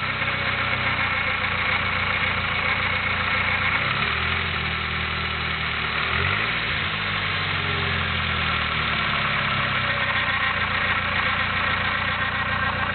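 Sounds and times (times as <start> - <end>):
car engine idling: 0.0 - 12.9
grinding noise from engine: 6.0 - 12.9.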